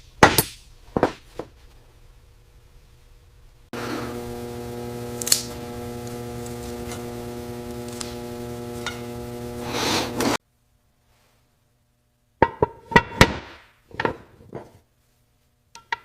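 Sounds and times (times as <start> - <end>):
small electric motor humming: 3.8 - 10.4
hiss: 9.5 - 10.4.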